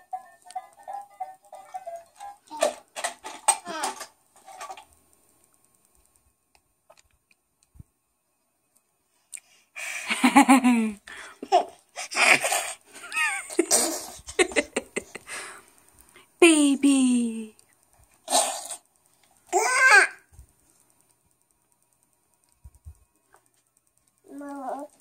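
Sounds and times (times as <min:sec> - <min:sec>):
person laughing: 0:10.0 - 0:15.5.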